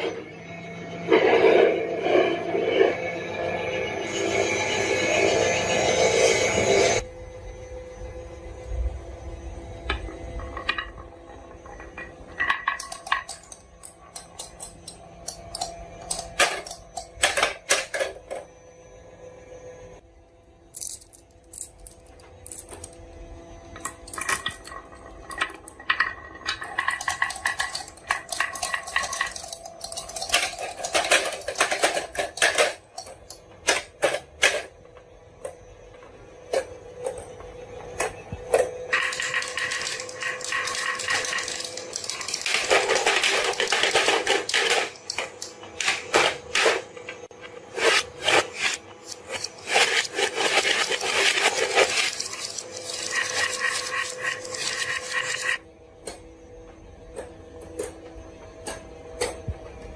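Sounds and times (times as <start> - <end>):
marbles rolling and clacking: 9.8 - 18.5, 20.7 - 23.1, 23.7 - 34.8, 38.0 - 55.6.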